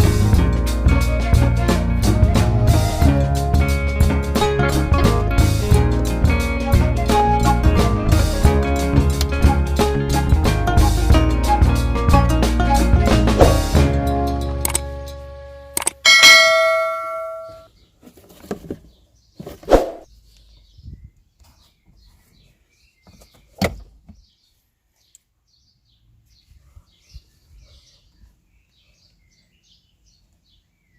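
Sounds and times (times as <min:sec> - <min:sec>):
bell-like ding: 0:16.0 - 0:17.7.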